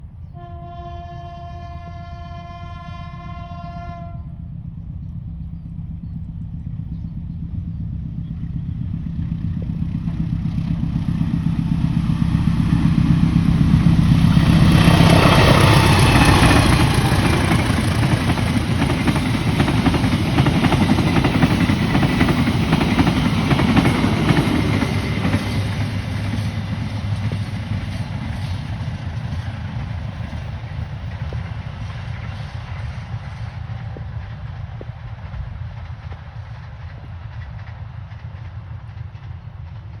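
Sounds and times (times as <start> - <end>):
diesel locomotive engine: 0.0 - 40.0
locomotive horn: 0.3 - 4.4
train wheel noise: 1.2 - 40.0.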